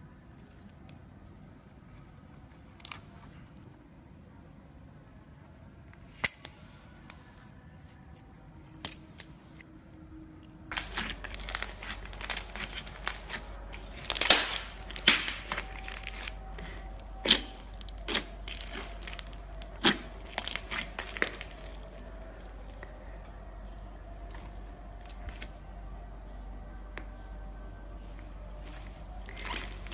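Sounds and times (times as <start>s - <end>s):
low hum: 6.7s - 29.9s
slime crackling and popping: 10.6s - 23.0s, 24.2s - 25.5s, 28.6s - 29.9s.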